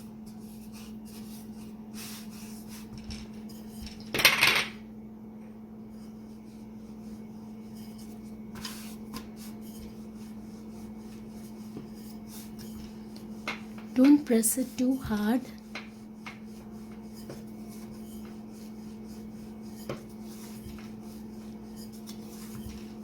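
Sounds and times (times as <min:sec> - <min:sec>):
rolling pin rubbing on dough: 0:00.0 - 0:04.0, 0:05.8 - 0:23.0
rolling pin clatter: 0:02.8 - 0:04.8, 0:11.7 - 0:14.3.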